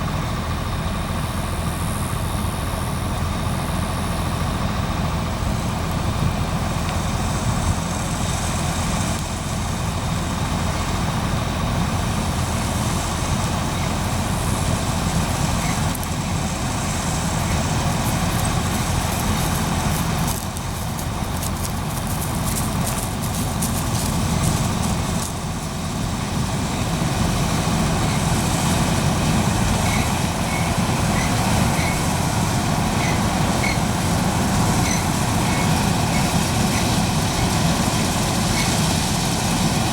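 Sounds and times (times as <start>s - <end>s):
combine harvester engine droning: 0.0s - 39.9s
fine crackling ticks: 17.4s - 25.8s.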